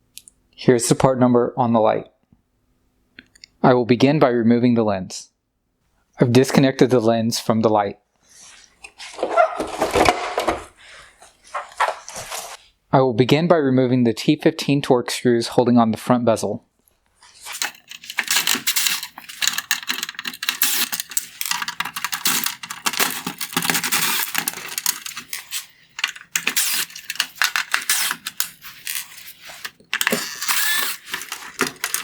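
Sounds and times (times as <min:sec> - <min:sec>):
screwdriver clicking and rattling: 0:17.5 - 0:32.0.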